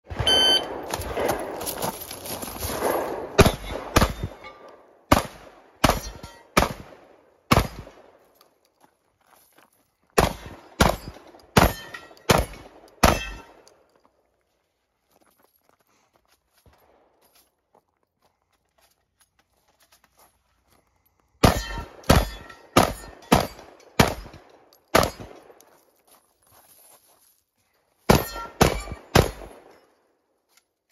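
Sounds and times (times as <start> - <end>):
background noise: 0.0 - 30.9
shotgun shots: 0.1 - 1.8, 2.7 - 8.2, 10.2 - 13.6, 21.4 - 25.6, 28.1 - 29.7
shot timer beep: 0.2 - 0.8.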